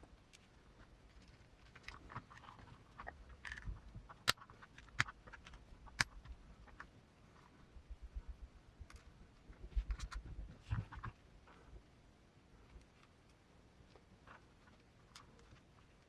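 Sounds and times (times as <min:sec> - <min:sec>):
small plastic parts clicking and tapping: 0:00.2 - 0:07.0, 0:12.7 - 0:16.0.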